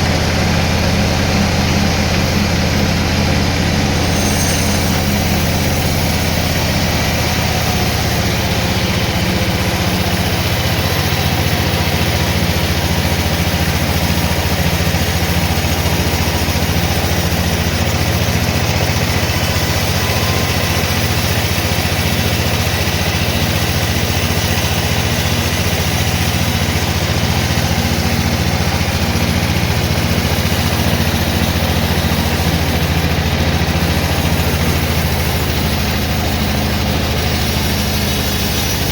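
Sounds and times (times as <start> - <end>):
sawmill machinery running: 0.0 - 38.9.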